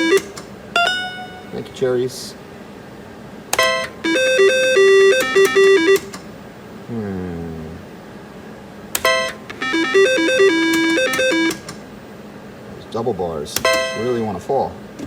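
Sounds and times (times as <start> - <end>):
slot machine beeping melodies: 0.0 - 1.6, 3.6 - 6.1, 9.0 - 11.6, 13.7 - 14.3
slot machine chime: 0.0 - 1.6, 3.6 - 6.0, 9.0 - 11.6, 13.7 - 14.3.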